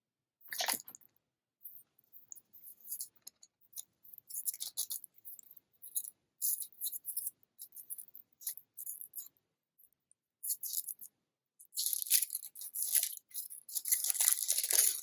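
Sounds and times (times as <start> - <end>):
small plastic clicks and rattles: 0.5 - 15.0
wrapper crinkling: 11.8 - 15.0.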